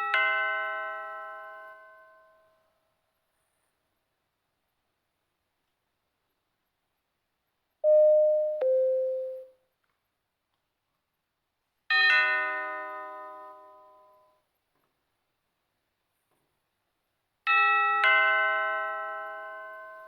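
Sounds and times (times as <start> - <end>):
two-note doorbell chime: 7.8 - 9.5
bright bell chime: 7.9 - 9.5.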